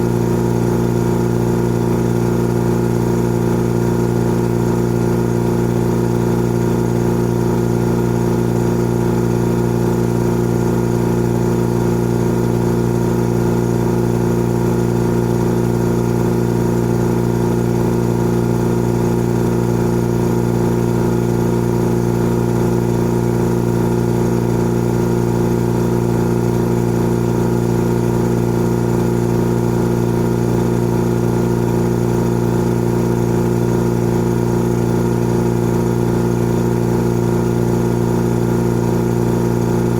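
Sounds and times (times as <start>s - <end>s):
air compressor humming: 24.0s - 39.9s.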